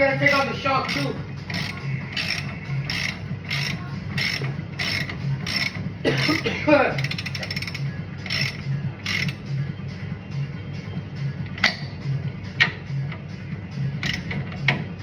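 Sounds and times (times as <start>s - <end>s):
socket ratchet clicking: 0.2s - 9.4s.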